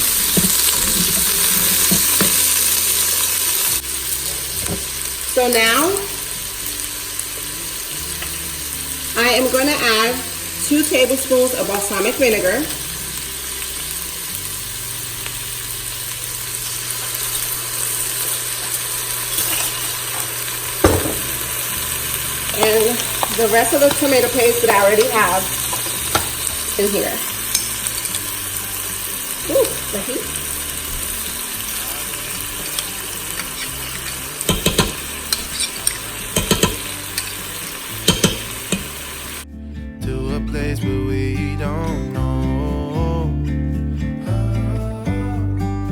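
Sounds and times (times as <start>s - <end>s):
utensil scraping and knocking pot: 0.0s - 3.5s, 18.6s - 39.4s
onions and garlic sizzling: 0.0s - 39.5s.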